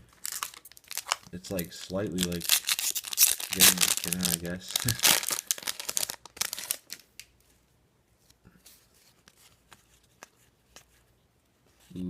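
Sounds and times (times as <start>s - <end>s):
crinkly wrapper tearing and crackling: 0.0s - 7.3s.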